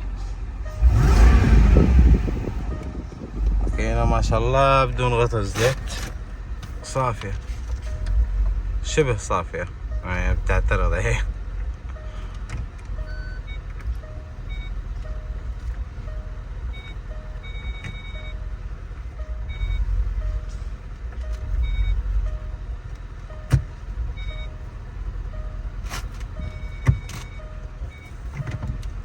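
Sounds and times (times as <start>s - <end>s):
short beeps: 0.6s - 4.6s, 16.1s - 18.5s, 24.2s - 24.6s, 26.4s - 28.8s.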